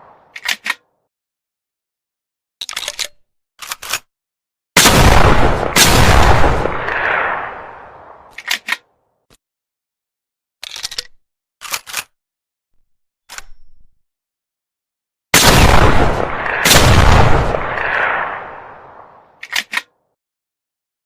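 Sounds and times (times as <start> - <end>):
metallic clicks and clacks: 0.3 - 0.8, 2.6 - 4.1, 19.4 - 19.9
shotgun blast echoing: 4.8 - 8.2, 15.4 - 19.0.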